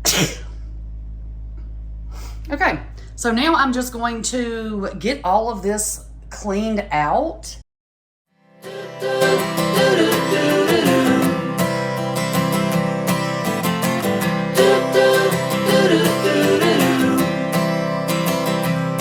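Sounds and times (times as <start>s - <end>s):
country acoustic guitar music: 8.6s - 19.0s.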